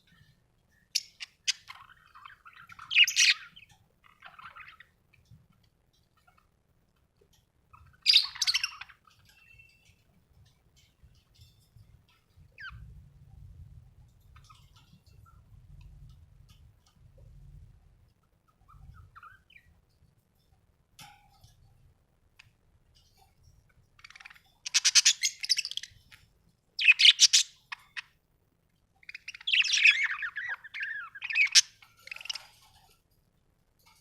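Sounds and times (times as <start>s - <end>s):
budgerigar chirping: 0.9s - 5.0s, 7.7s - 9.6s, 24.0s - 26.0s, 26.8s - 28.1s, 29.0s - 32.5s
faint clicks: 3.4s - 24.8s.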